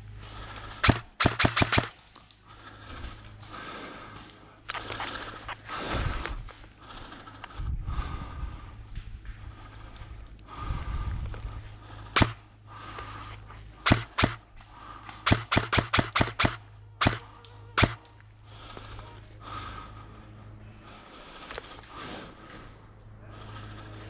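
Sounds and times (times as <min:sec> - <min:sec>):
airsoft gun shots: 0:00.8 - 0:02.0, 0:12.2 - 0:12.4, 0:13.8 - 0:14.4, 0:15.2 - 0:18.0.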